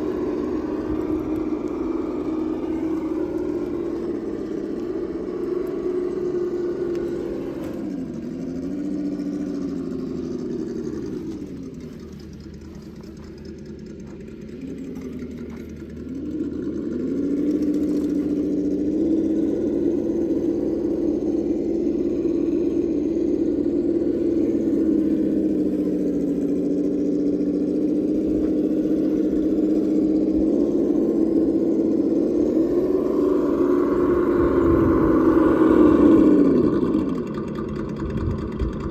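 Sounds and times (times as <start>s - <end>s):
electric motor and gears whining: 0.0s - 38.9s.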